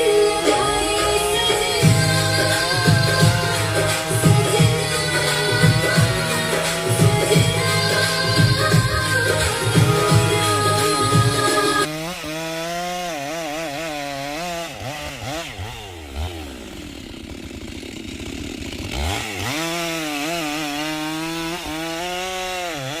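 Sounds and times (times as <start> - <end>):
chainsaw cutting a tree: 0.0 - 23.0.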